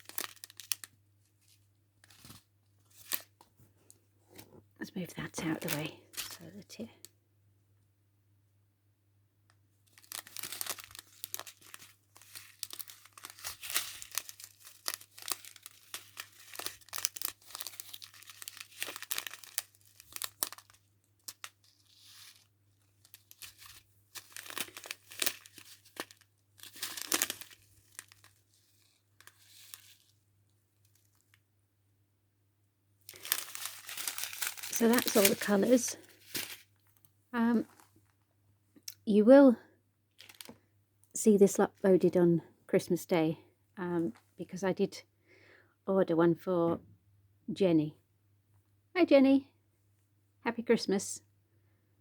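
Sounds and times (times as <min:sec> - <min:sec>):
plastic packaging crinkling: 0:00.0 - 0:03.4, 0:05.2 - 0:06.6, 0:09.8 - 0:30.2, 0:30.8 - 0:31.4, 0:33.1 - 0:38.0, 0:40.1 - 0:40.6.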